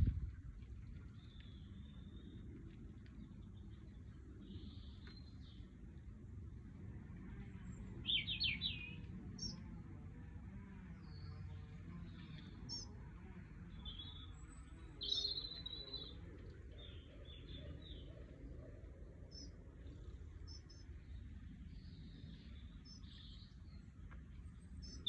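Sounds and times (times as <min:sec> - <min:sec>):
low rumble: 0:00.0 - 0:01.0
songbird chirping and trilling: 0:07.7 - 0:09.7, 0:11.0 - 0:13.0, 0:13.6 - 0:24.0, 0:24.6 - 0:25.0.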